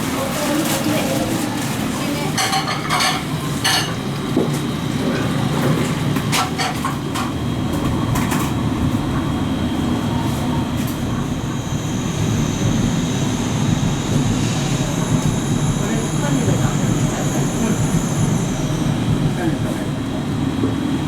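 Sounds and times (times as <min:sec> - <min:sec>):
dishes and cutlery clinking: 0:02.3 - 0:04.0
low rumble of station noise: 0:07.0 - 0:21.0.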